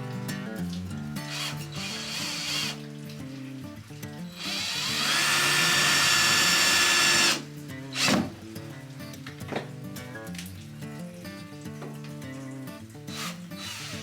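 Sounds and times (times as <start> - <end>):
power drill whining: 1.3 - 2.8, 4.4 - 8.3, 13.1 - 14.0.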